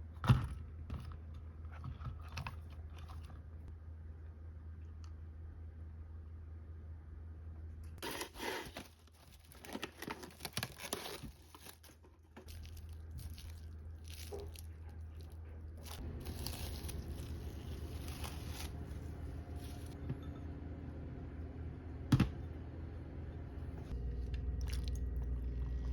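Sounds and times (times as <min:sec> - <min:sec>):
crinkling and tearing handling: 0:08.0 - 0:20.0.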